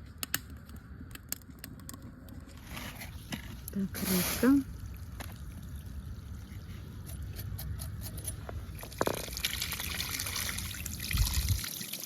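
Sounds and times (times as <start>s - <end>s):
water trickling and splashing: 3.6s - 12.0s.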